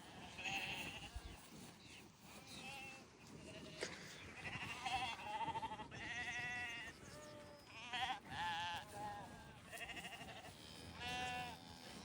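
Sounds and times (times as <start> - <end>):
sheep bleating: 0.0 - 1.3, 4.3 - 12.0.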